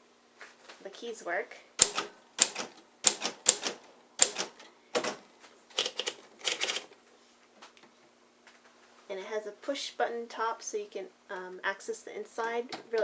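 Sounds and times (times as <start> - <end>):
typewriter keys clacking: 5.8 - 6.9.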